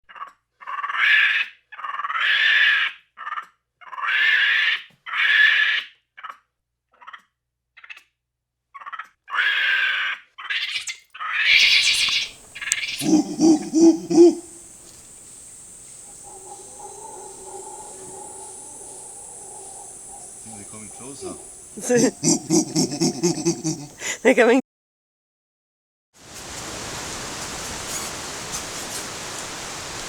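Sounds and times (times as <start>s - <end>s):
harsh animal screeches: 11.5s - 24.2s
lower pulsed animal calls: 11.6s - 24.3s.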